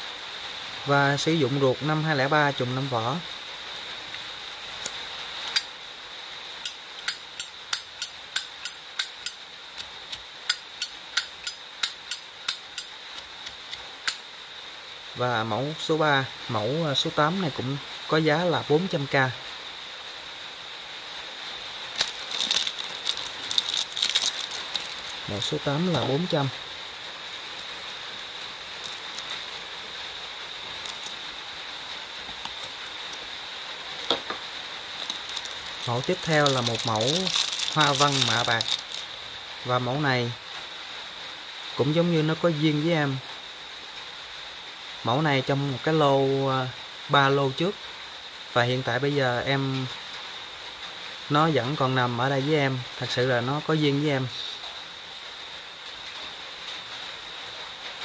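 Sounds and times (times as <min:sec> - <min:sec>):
background hiss: 0:00.0 - 0:58.0
faint high-pitched whine: 0:00.0 - 0:58.0
lighter lid clicking open and shut: 0:06.6 - 0:14.2.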